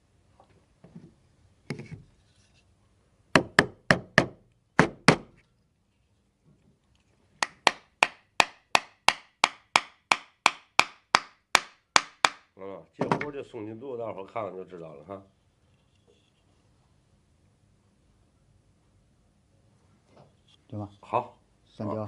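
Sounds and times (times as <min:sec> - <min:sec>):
hammer knocking on wood: 0:03.4 - 0:05.3.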